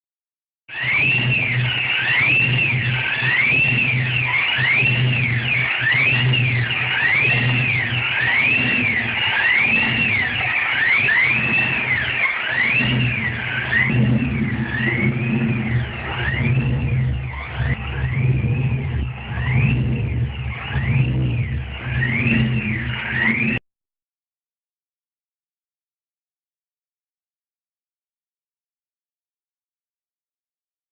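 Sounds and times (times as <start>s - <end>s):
supercharger whine: 0.7s - 23.6s.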